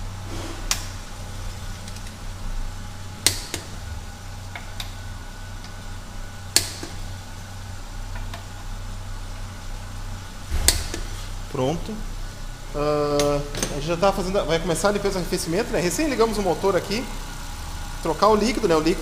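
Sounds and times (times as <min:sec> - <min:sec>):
low hum: 0:09.4 - 0:12.8.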